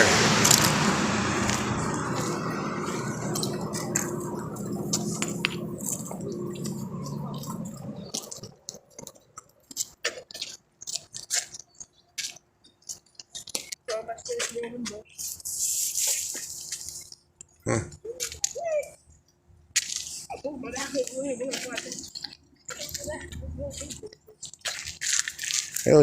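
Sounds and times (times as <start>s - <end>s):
low rumble: 0.0s - 8.2s
rubble crunching and clicking: 3.2s - 15.2s, 19.7s - 26.0s.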